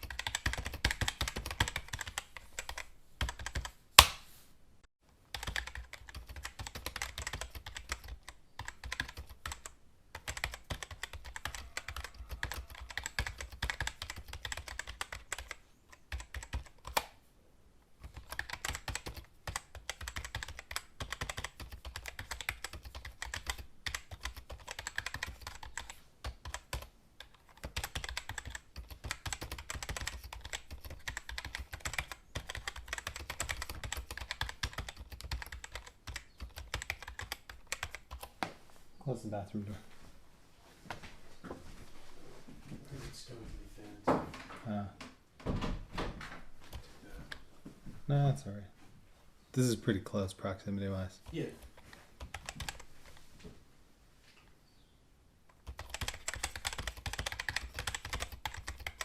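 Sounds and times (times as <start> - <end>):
typing on computer keyboard: 0.0 - 3.7, 5.3 - 17.1, 18.0 - 38.3, 51.2 - 52.9, 55.5 - 59.0.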